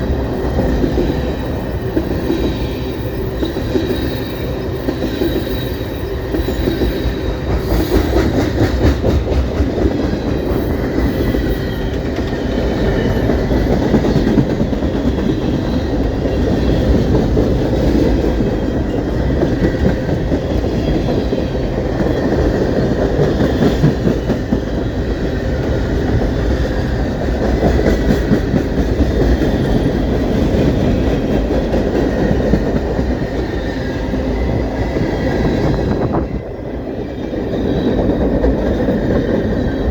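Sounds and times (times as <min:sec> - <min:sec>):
faint high squeal: 0:00.0 - 0:07.9
train wheels clattering over rails: 0:00.0 - 0:39.9.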